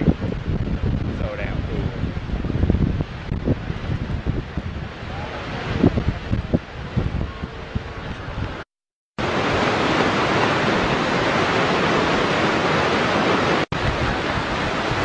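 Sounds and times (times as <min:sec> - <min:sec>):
waterfall rushing: 0:03.2 - 0:08.6, 0:09.2 - 0:15.0.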